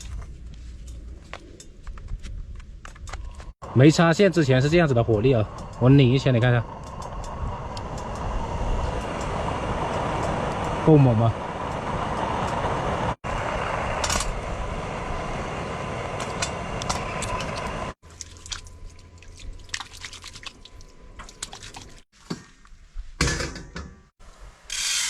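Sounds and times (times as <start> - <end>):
stove blower rushing: 4.0 - 18.0.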